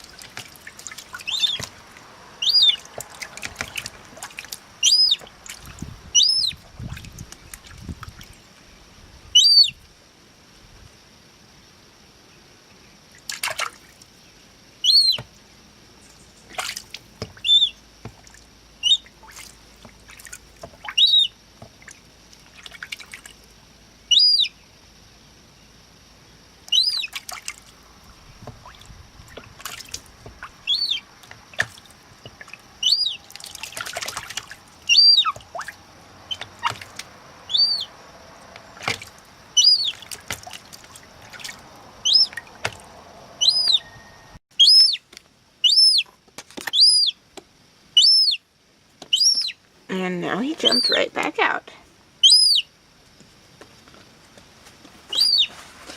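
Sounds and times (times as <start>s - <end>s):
water splashing and dripping: 0.0s - 8.5s, 13.1s - 14.1s, 16.4s - 23.6s, 27.0s - 37.4s, 38.1s - 43.3s
gull chick peeping: 1.0s - 1.8s, 2.4s - 4.0s, 4.8s - 5.3s, 6.1s - 6.6s, 9.3s - 9.8s, 14.8s - 15.3s, 17.2s - 17.8s, 18.8s - 19.3s, 20.8s - 21.3s, 24.1s - 24.5s, 26.7s - 27.2s, 30.2s - 31.7s, 32.3s - 33.9s, 34.8s - 37.9s, 38.8s - 40.3s, 42.0s - 42.7s, 43.4s - 45.0s, 45.6s - 46.1s, 46.7s - 47.2s, 48.0s - 48.4s, 49.0s - 49.6s, 50.5s - 51.3s, 52.2s - 52.7s, 55.1s - 55.6s.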